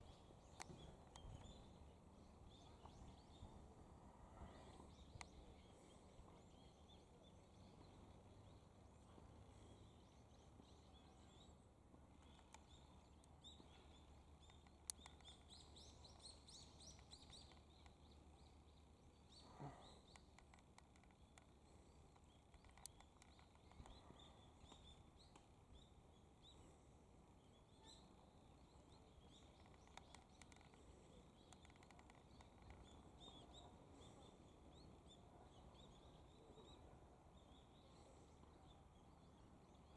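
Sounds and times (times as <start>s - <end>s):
small birds chirping: 0.0s - 39.9s
sharp clicks: 14.4s - 16.2s, 20.1s - 24.0s, 29.4s - 30.8s, 31.5s - 32.9s.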